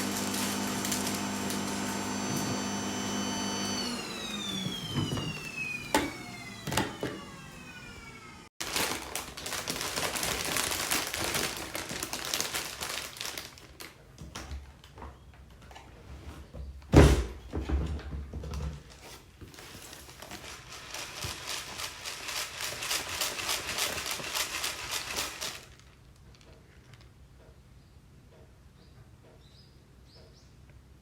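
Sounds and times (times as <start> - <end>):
small beads rattling: 8.6 - 13.8, 19.6 - 27.1.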